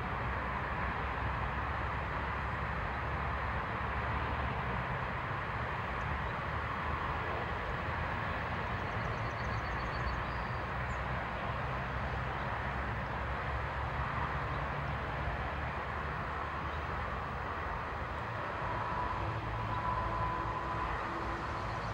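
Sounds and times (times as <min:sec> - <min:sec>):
outdoor rumble and hiss: 0:00.0 - 0:21.9.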